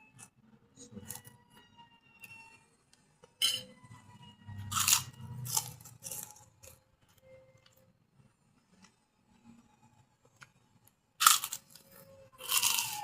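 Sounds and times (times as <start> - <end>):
person chewing crunchy food: 4.6 - 6.8, 11.2 - 13.0.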